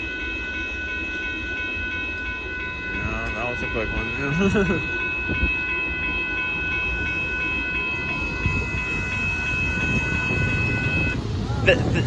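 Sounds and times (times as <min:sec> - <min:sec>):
crossing warning bell ringing: 0:00.0 - 0:12.0
freight train cars rumbling: 0:00.0 - 0:12.0.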